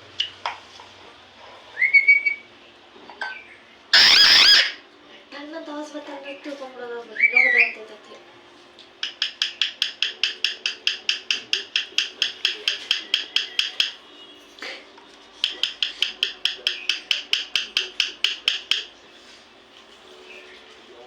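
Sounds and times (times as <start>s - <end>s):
parrot harsh calls: 3.9s - 4.8s.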